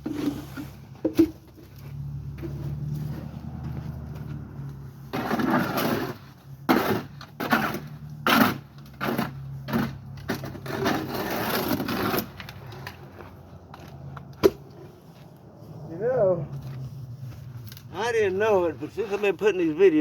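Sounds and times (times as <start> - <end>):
shovel scraping concrete mix: 0.0 - 3.4, 4.9 - 13.2.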